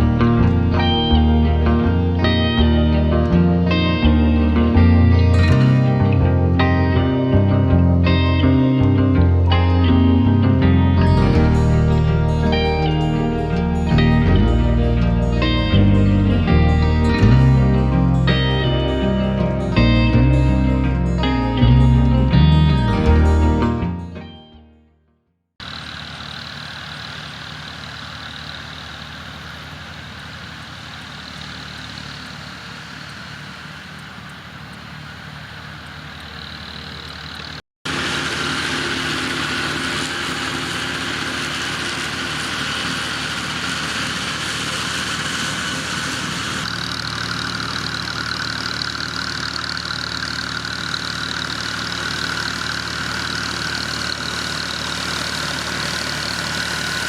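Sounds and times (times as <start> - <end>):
tractor engine running: 0.0 - 24.3, 25.6 - 57.0
high whine: 0.0 - 24.6.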